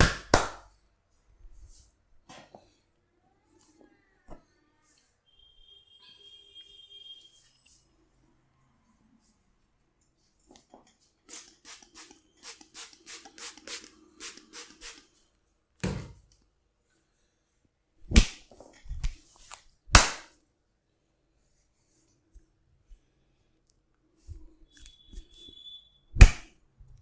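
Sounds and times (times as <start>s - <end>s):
hands slapping on body: 0.0s - 0.7s, 18.1s - 20.3s, 26.2s - 26.5s.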